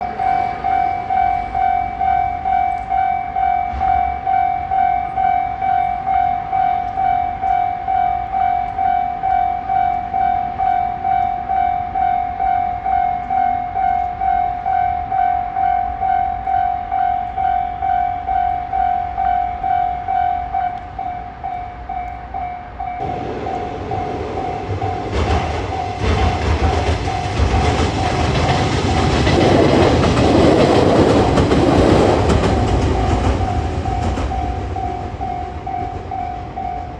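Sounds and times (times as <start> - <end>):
level crossing bell ringing: 0.0 - 28.3
train rumble: 0.0 - 36.9
wheels clacking over rails: 23.0 - 36.9.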